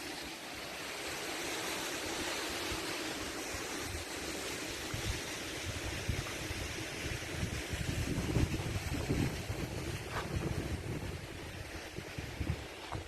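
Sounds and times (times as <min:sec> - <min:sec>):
stream water rushing: 0:00.0 - 0:13.0
wind rumble on microphone: 0:04.8 - 0:13.0.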